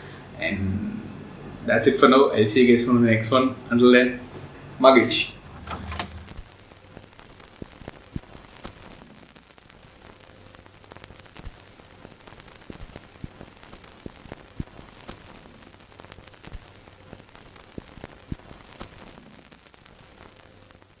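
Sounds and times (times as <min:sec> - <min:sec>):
steady hiss: 0:00.0 - 0:21.0
crackling clicks: 0:05.4 - 0:20.8.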